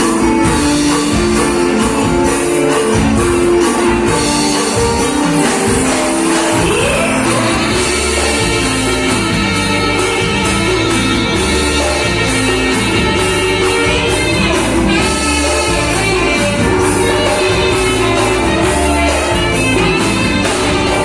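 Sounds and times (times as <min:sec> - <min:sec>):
live band music: 0:00.0 - 0:21.0
person singing: 0:05.8 - 0:09.1.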